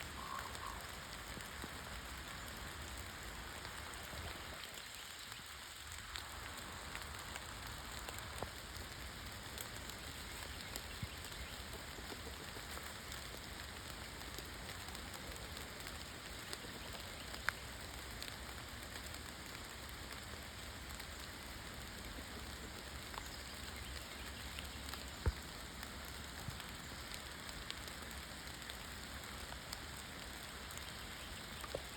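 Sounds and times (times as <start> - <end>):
faint steady hiss: 0.0 - 31.9
light ticks: 15.8 - 20.2.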